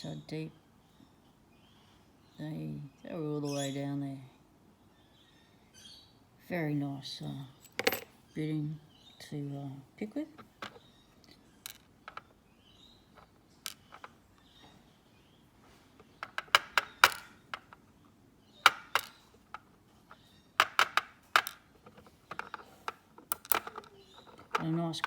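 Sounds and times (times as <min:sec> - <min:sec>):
small metal clicks and taps: 0:18.7 - 0:24.8.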